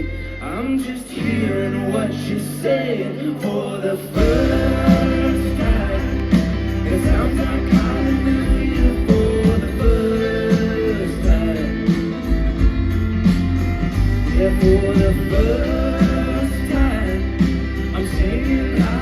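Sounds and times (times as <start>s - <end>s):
indie-folk band playing live: 0.0s - 19.0s
steady drum beat: 4.2s - 19.0s.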